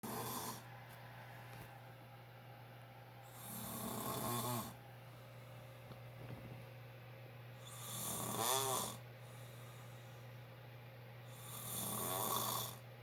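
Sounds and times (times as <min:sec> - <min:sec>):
man snoring loud: 0:00.0 - 0:00.6, 0:03.3 - 0:04.8, 0:07.6 - 0:09.0, 0:11.3 - 0:12.8.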